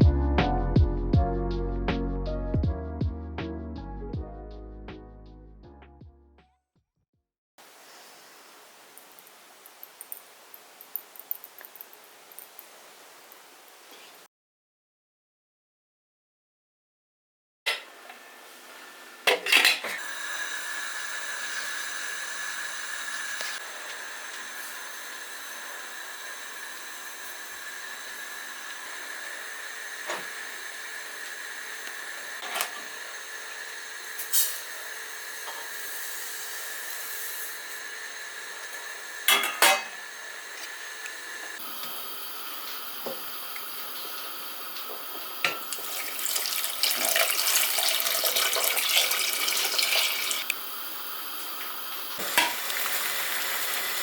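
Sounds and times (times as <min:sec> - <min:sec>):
dishes clinking: 0:19.3 - 0:20.0, 0:39.3 - 0:40.0.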